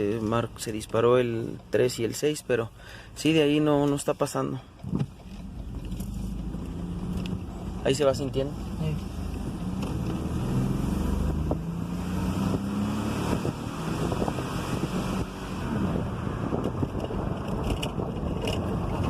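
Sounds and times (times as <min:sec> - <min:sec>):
road and wind noise: 0:00.0 - 0:19.0
pickup engine accelerating: 0:05.2 - 0:19.0.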